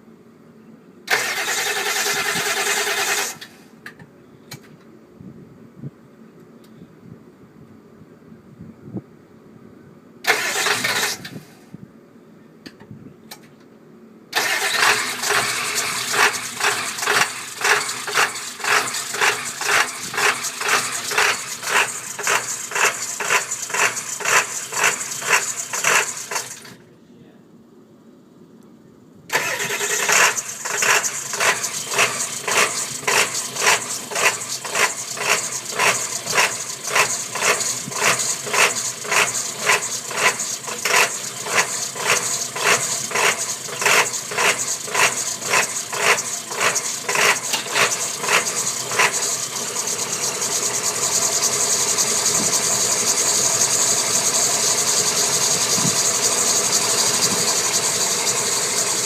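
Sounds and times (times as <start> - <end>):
diesel engine idling: 14.4 - 26.8, 29.3 - 59.0.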